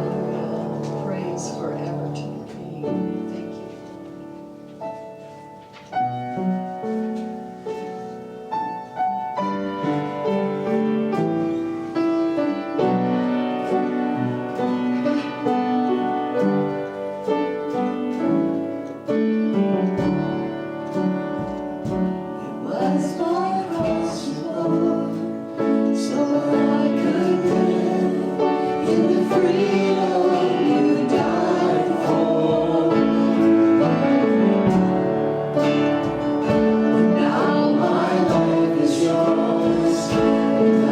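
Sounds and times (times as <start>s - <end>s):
people singing worship music: 0.0s - 4.4s, 19.5s - 40.9s
keyboard chords: 0.0s - 40.9s.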